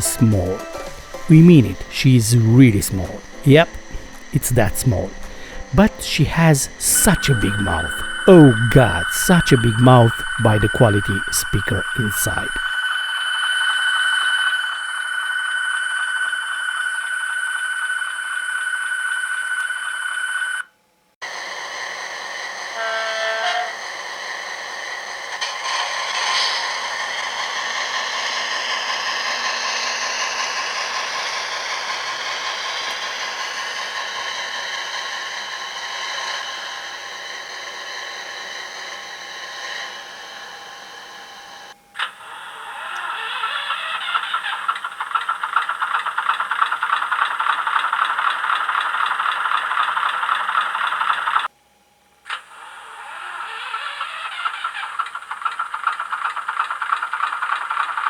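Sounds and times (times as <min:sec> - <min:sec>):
diesel engine sound effect: 0:00.0 - 0:12.7, 0:21.3 - 0:41.8
model train horn blast: 0:22.6 - 0:23.9.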